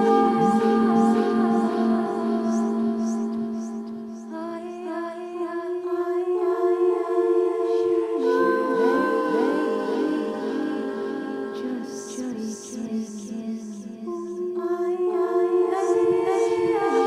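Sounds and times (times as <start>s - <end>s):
wordless voices singing and humming: 0.0s - 17.0s.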